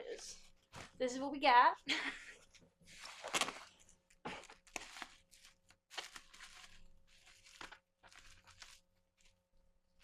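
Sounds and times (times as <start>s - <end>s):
plastic wrapping crinkling: 2.4s - 9.4s.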